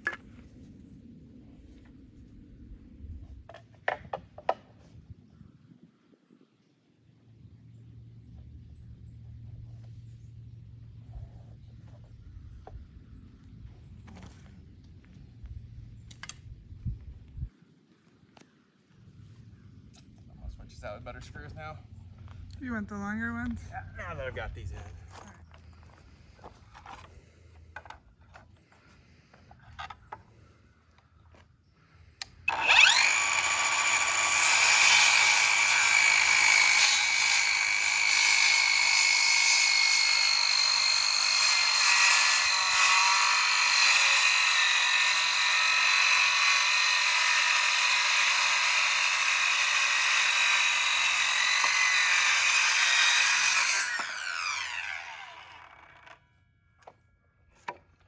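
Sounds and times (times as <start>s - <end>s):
electric power tool whining: 32.2s - 56.2s.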